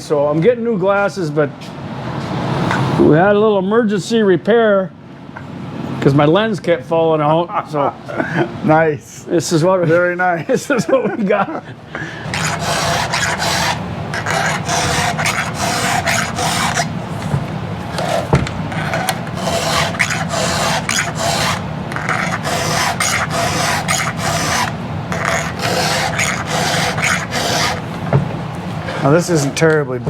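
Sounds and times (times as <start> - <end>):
file rasping on chain teeth: 12.3 - 28.1.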